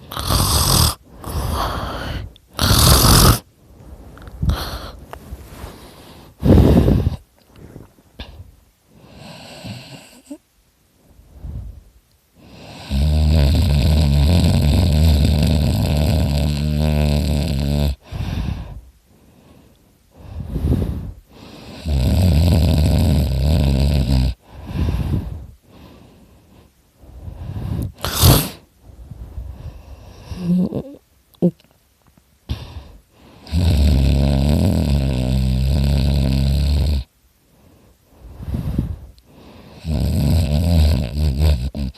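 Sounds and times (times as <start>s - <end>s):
man snoring loudly: 0.0s - 3.5s, 9.1s - 10.3s, 12.4s - 18.1s, 21.6s - 24.9s, 33.4s - 37.1s, 39.7s - 41.9s.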